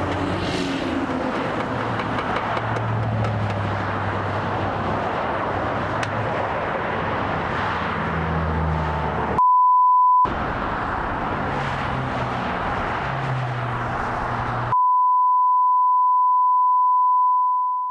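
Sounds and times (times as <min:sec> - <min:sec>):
vehicle engine and road noise: 0:00.0 - 0:09.4, 0:10.3 - 0:14.8
steady beep tone: 0:09.4 - 0:10.3, 0:14.7 - 0:17.9.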